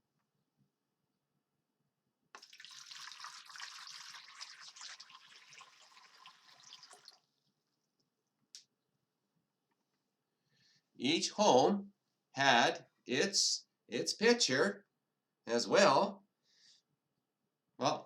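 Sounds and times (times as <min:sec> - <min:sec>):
water pouring into a basin: 0:02.4 - 0:07.4.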